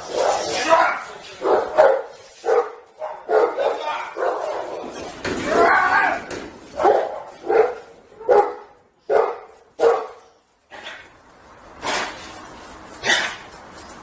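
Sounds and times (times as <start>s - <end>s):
dog barking: 1.4s - 4.8s, 6.8s - 10.3s.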